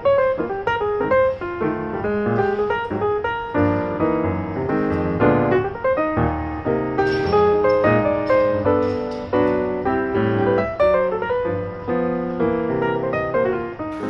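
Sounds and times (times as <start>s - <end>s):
instrumental piano music: 0.0s - 14.0s.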